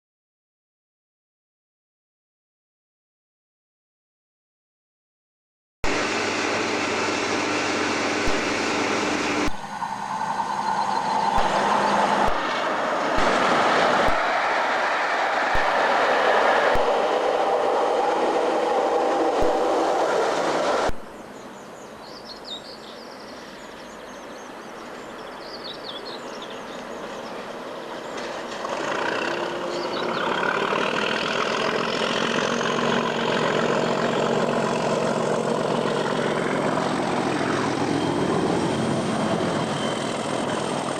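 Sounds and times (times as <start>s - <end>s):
rising whine: 5.8s - 21.6s
freight train passing: 5.9s - 40.9s.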